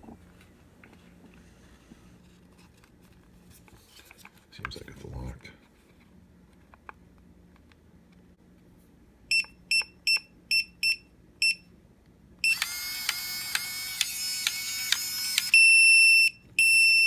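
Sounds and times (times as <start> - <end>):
keypad beeps: 12.4 - 17.0.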